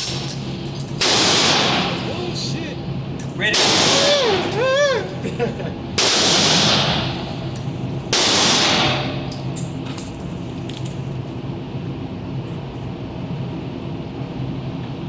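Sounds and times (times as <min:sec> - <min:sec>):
spent casings clinking: 0:00.0 - 0:02.6, 0:03.2 - 0:05.4, 0:06.4 - 0:11.3
steady low hum: 0:00.0 - 0:15.0
gunshot with echo: 0:01.0 - 0:01.8, 0:08.1 - 0:09.0.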